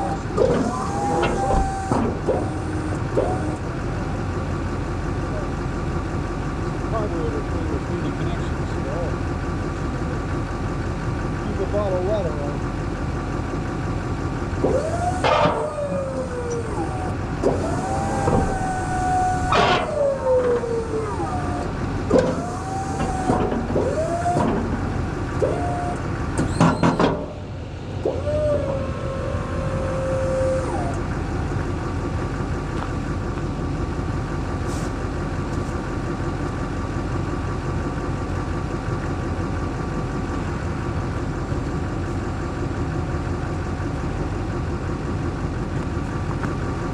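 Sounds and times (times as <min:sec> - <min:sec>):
hydraulic pump whining: 0:00.0 - 0:05.6, 0:14.0 - 0:36.6
diesel engine idling: 0:00.0 - 0:46.9
sharp clunks: 0:14.6 - 0:15.8, 0:17.4 - 0:20.7, 0:26.4 - 0:27.4.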